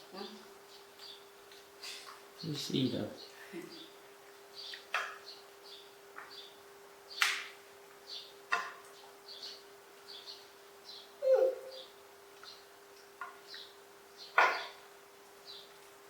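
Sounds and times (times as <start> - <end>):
short high chirps: 11.2 - 11.9.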